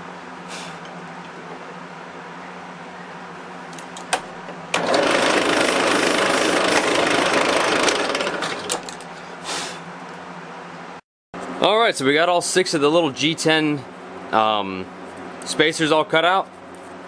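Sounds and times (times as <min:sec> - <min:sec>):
power tool rasping: 0:04.8 - 0:08.8.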